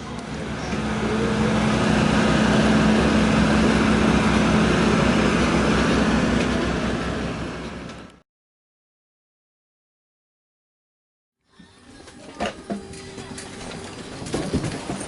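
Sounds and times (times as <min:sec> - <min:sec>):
steady hum: 0:00.0 - 0:08.1
jet engines rushing: 0:00.0 - 0:08.2.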